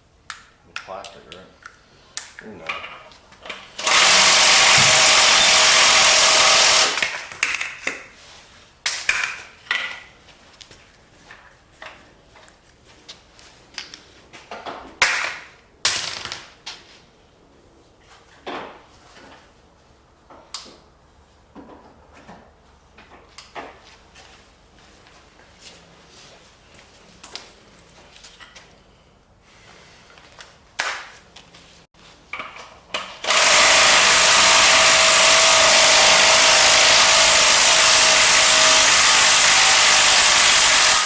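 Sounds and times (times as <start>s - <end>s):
power tool running: 3.7s - 7.3s, 33.2s - 41.0s.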